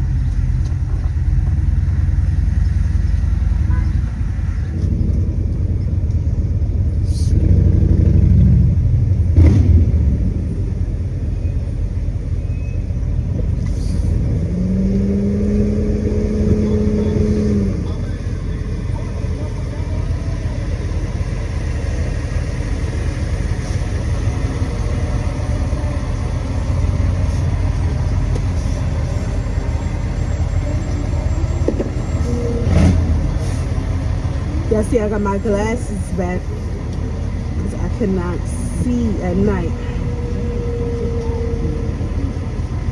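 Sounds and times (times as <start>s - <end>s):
road and engine rumble in car: 0.0s - 42.9s.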